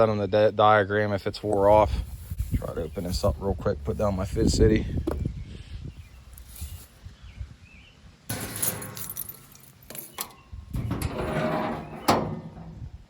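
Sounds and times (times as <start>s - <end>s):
metal box scraping and rattling: 8.3s - 12.7s.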